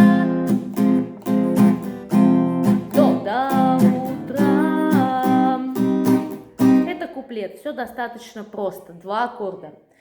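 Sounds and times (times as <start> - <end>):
acoustic guitar strumming: 0.0 - 7.0.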